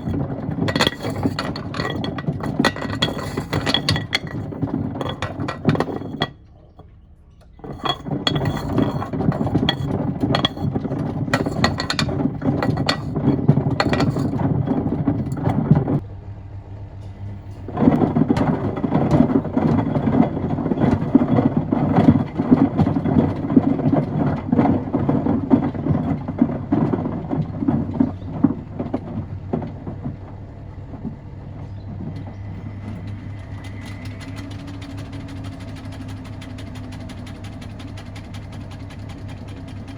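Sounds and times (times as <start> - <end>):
stones knocking in washing machine drum: 0.0 - 6.4, 7.6 - 16.0, 17.7 - 31.3
washing machine motor hum: 0.0 - 39.9.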